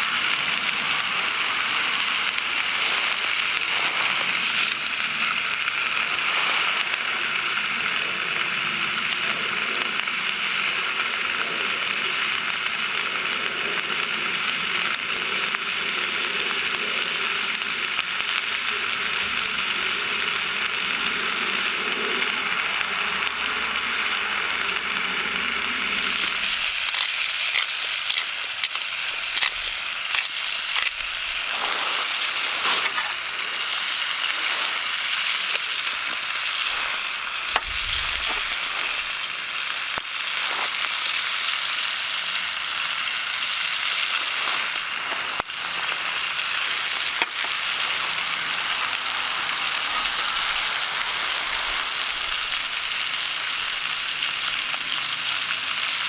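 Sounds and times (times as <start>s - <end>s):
crackles and pops: 0.0s - 8.2s, 9.2s - 56.0s
food sizzling in a pan: 0.0s - 56.0s
low rumble: 46.4s - 54.2s.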